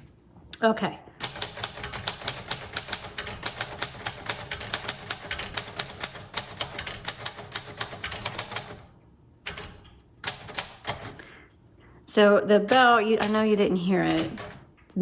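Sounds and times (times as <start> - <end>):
typewriter carriage locking: 1.2 - 8.9, 9.5 - 11.2, 12.6 - 14.7
typewriter key strikes: 1.2 - 8.9, 9.5 - 11.2, 12.6 - 14.7.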